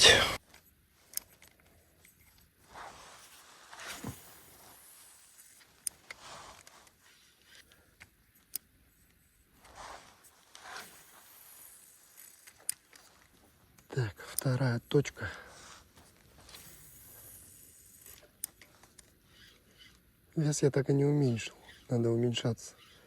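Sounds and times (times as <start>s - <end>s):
fishing reel clicks: 16.5s - 20.0s, 21.4s - 23.0s.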